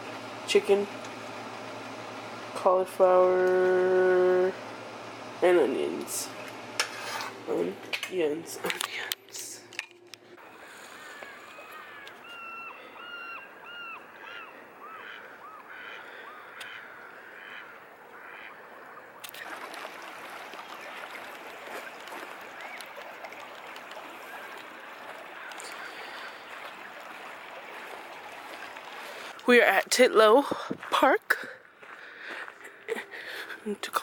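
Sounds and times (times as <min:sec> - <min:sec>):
waterfowl honking: 0:10.4 - 0:29.4.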